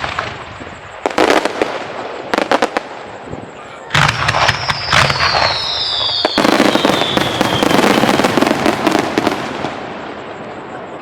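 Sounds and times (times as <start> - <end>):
dense firework crackle: 0.0 - 11.0
firework bangs: 0.0 - 11.0
falling firework whistle: 3.8 - 9.8.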